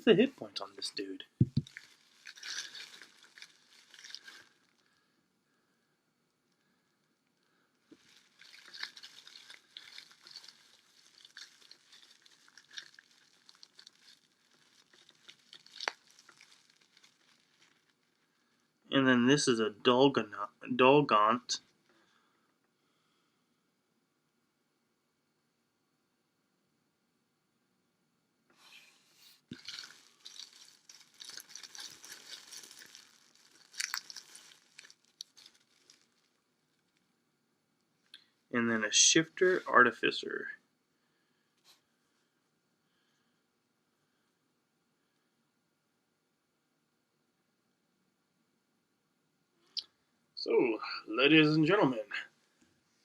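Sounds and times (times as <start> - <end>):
soft rustling of handling: 0.0 - 5.0, 6.5 - 18.8, 28.6 - 37.1.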